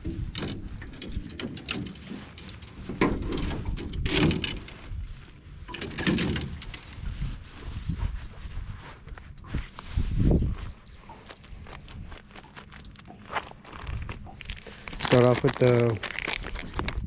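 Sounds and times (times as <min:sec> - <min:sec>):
rustling: 0:00.0 - 0:07.9.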